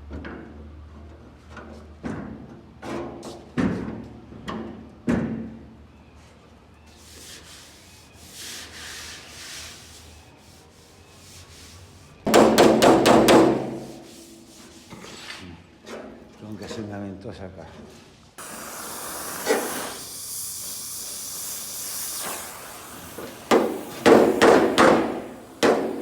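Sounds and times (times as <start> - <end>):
rubbing on metal: 6.9 - 15.4
knocks on steel panel: 12.3 - 14.0, 23.5 - 26.0.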